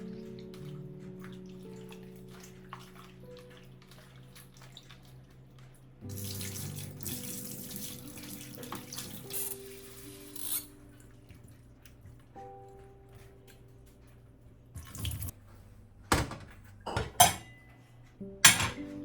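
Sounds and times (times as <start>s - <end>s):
soft background music: 0.0s - 15.6s, 16.5s - 19.0s.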